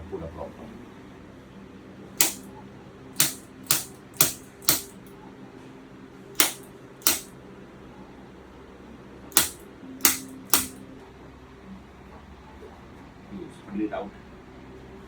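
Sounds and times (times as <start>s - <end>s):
sharp joint clicks: 2.2s - 2.4s, 3.2s - 5.0s, 6.4s - 7.3s, 9.4s - 10.8s.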